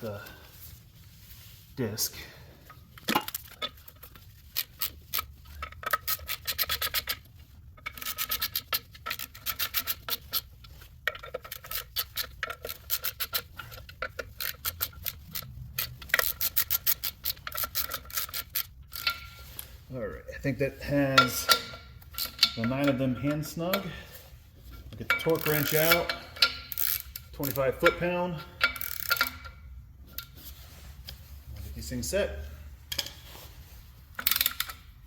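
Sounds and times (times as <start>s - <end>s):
hand ratchet clicking: 3.0s - 19.4s, 21.2s - 23.9s, 25.0s - 30.4s, 34.2s - 34.9s.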